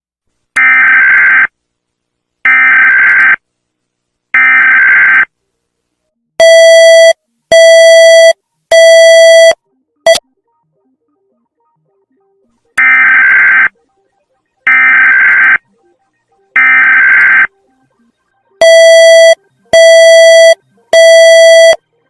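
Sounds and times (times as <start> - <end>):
loud buzzy beeps: 0.6 - 1.5, 2.5 - 3.4, 4.4 - 5.3, 6.4 - 10.2, 12.8 - 13.7, 14.7 - 15.6, 16.6 - 17.5, 18.6 - 21.8.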